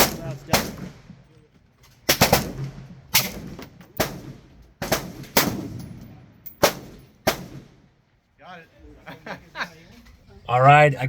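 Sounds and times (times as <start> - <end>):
gunshots with echo: 0.0 - 1.0.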